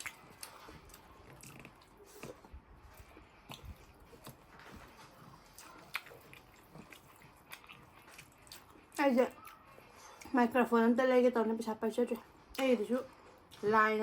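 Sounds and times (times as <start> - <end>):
person chewing: 0.0 - 10.3.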